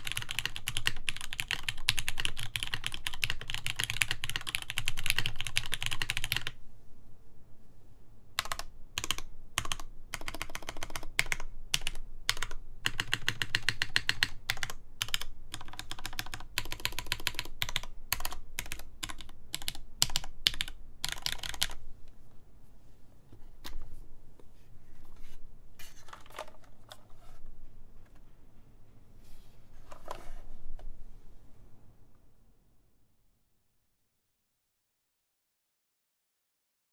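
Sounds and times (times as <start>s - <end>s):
mechanical keyboard typing: 0.0s - 6.6s, 8.4s - 21.8s.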